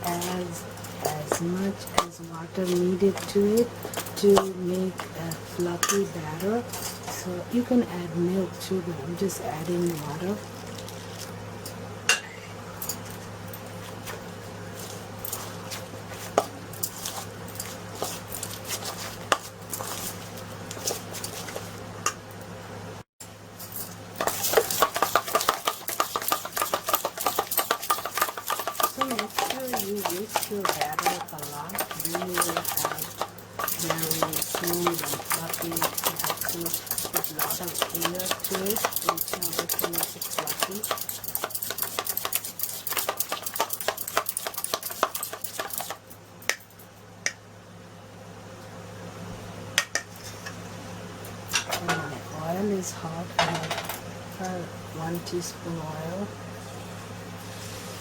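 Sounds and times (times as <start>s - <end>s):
low steady hum: 0.0s - 58.0s
whisk clattering against bowl: 24.2s - 46.1s.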